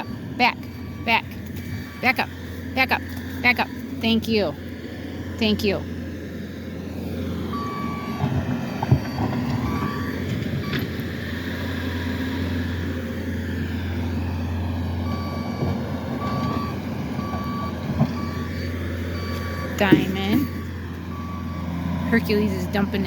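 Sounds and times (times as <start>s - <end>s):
reversing alarm beeping: 0.0s - 4.6s, 7.5s - 8.2s, 9.0s - 12.8s, 15.0s - 23.0s
low engine hum: 0.0s - 23.0s.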